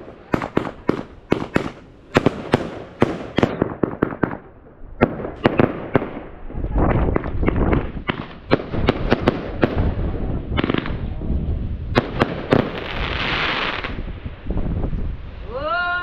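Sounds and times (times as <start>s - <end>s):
fireworks bangs: 0.0s - 14.8s
fireworks hissing burst: 11.9s - 14.4s.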